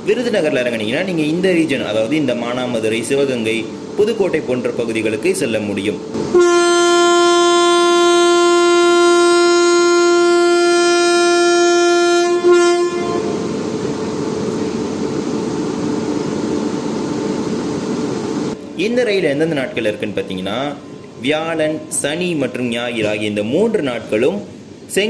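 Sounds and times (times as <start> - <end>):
train rumbling: 0.0 - 24.9
locomotive horn blast: 6.2 - 13.8.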